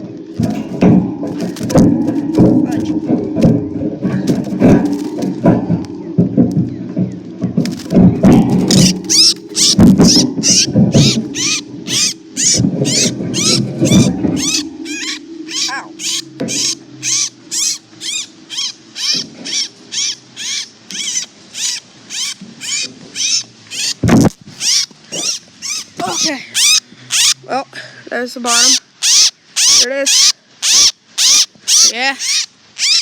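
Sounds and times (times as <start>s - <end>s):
loud rustling and scuffling: 0.3s - 11.4s
small bird harsh alarm calls: 8.6s - 27.4s, 28.5s - 33.0s.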